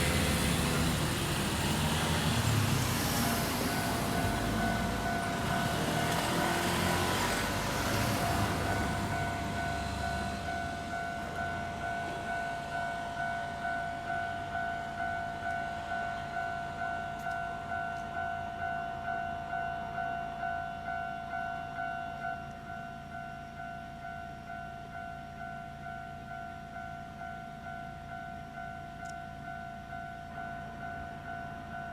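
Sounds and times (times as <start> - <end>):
electronic crossing bell ringing: 0.0 - 22.5
train running over crossing: 0.0 - 31.9.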